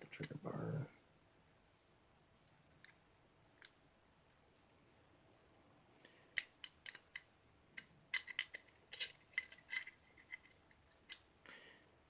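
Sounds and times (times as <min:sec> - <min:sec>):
pistol parts clicking: 0:06.2 - 0:11.4.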